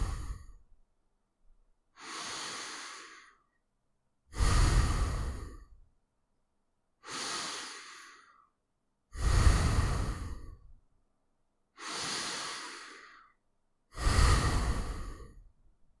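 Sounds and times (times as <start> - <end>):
person breathing through nose: 0.0 - 0.6, 2.0 - 3.5, 4.3 - 5.8, 7.0 - 8.5, 9.1 - 10.8, 11.8 - 15.5.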